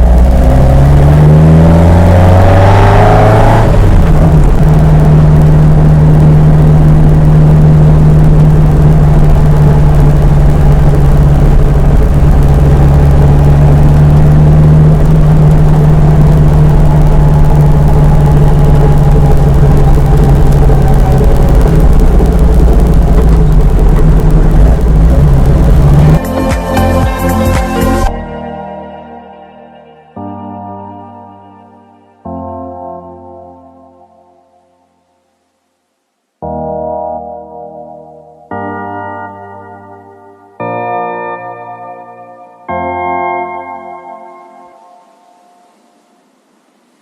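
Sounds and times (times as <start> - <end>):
sports car engine revving: 0.0 - 28.1
road and wind noise: 0.0 - 28.4, 37.2 - 47.0.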